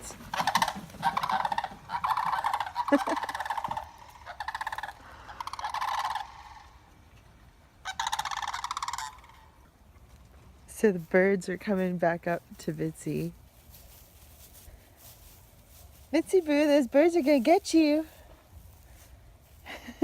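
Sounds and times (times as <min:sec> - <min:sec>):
cranes calling: 0:00.0 - 0:07.1, 0:07.8 - 0:09.7.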